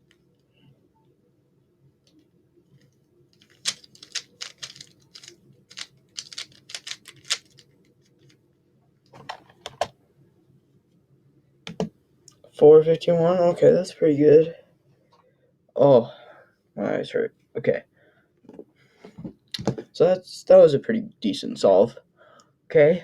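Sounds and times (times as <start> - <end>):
plastic puzzle cube clicking: 3.4 - 7.6.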